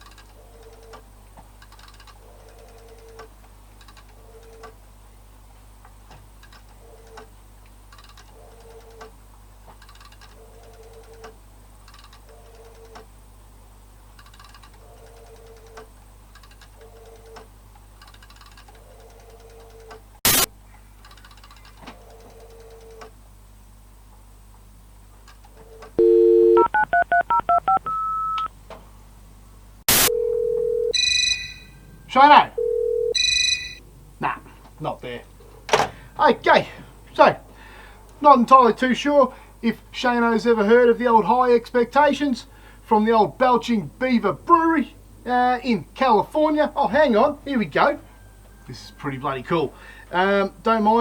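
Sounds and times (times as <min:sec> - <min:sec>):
phone call beeps: 0:26.0 - 0:28.5, 0:29.9 - 0:33.8
telephone dial tone: 0:26.0 - 0:28.5, 0:29.9 - 0:31.6, 0:32.6 - 0:33.8.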